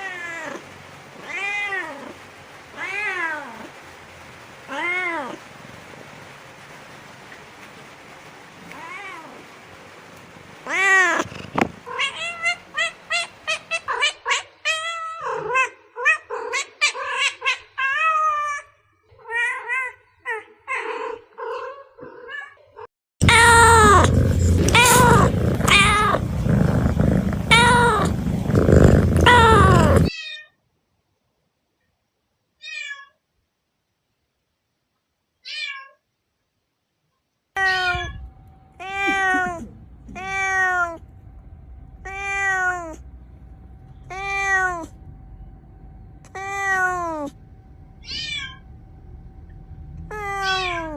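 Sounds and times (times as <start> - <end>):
cat meowing: 23.2 - 30.5, 35.4 - 36.0, 37.6 - 43.0, 44.1 - 45.0, 46.3 - 47.4, 48.0 - 48.6, 50.0 - 50.9
low background noise: 36.0 - 50.9.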